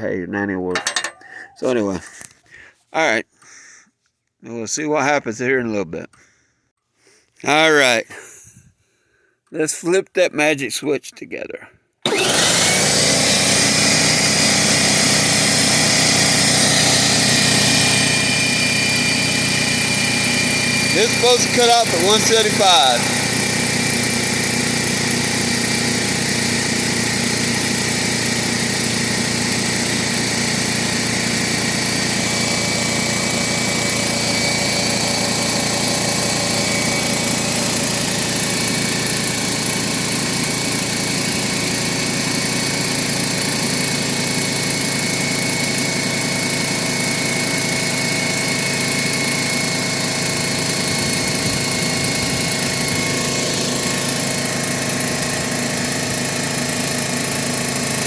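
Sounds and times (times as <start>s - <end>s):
air compressor running: 12.0s - 58.0s.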